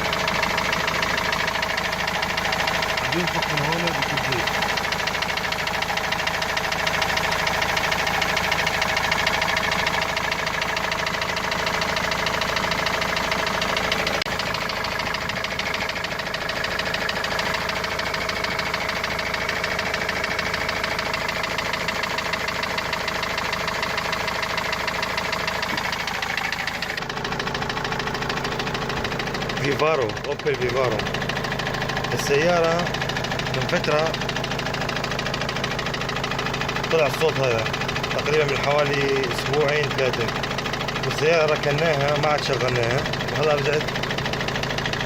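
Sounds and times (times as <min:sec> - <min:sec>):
diesel engine idling with knock: 0:00.0 - 0:45.0.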